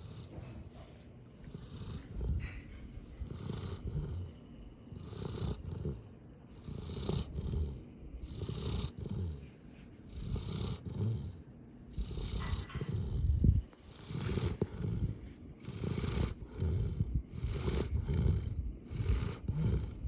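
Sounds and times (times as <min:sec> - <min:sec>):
low rattling snoring: 0:00.0 - 0:00.5, 0:01.4 - 0:09.5, 0:10.1 - 0:20.0.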